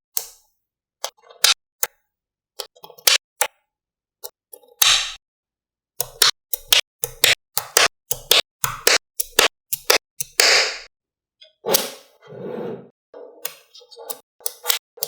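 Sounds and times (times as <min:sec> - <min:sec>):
magnetic balls clicking together: 0:06.0 - 0:10.9.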